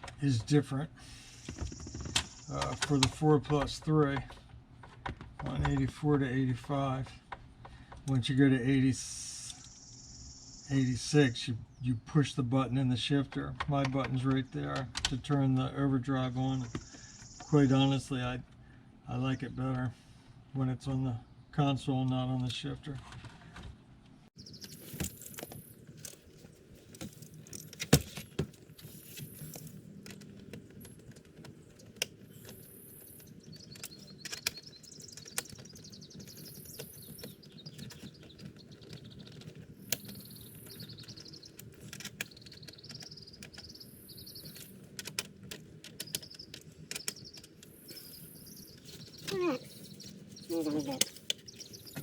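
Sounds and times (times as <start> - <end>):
faint chirping: 9.2 - 12.2, 16.3 - 19.6, 24.4 - 52.0.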